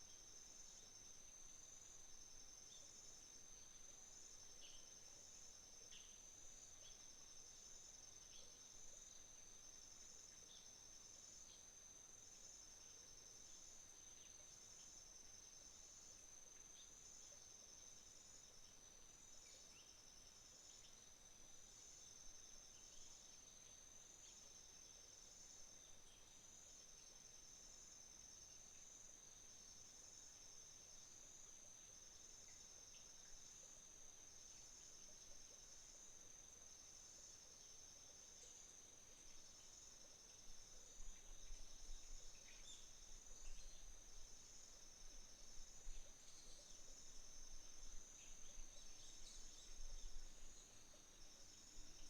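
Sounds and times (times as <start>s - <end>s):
faint bird chirps: 45.8s - 51.1s.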